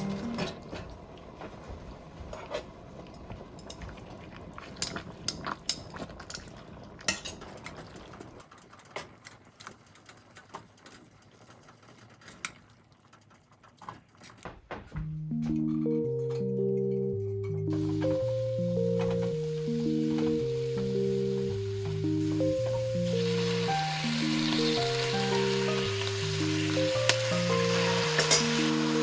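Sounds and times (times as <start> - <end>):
utensils clinking against bowls: 24.4 - 29.0.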